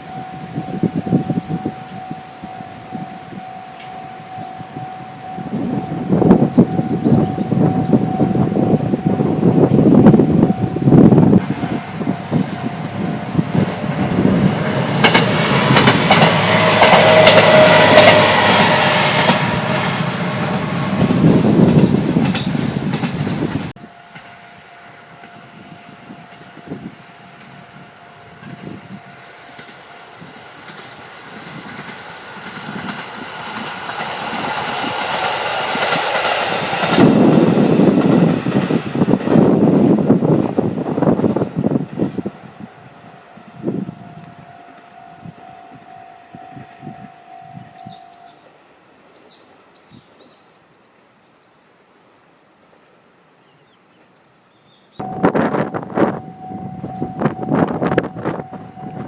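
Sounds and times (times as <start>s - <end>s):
level crossing warning bell: 0.0s - 13.9s, 23.8s - 30.8s, 42.7s - 48.5s, 55.0s - 59.0s
wheels clacking over rail joints: 0.0s - 25.4s, 29.4s - 42.1s
diesel railcar engine: 0.0s - 49.8s, 55.0s - 59.0s
loud rushing noise: 5.6s - 23.7s
faint bird chirps: 47.8s - 48.5s.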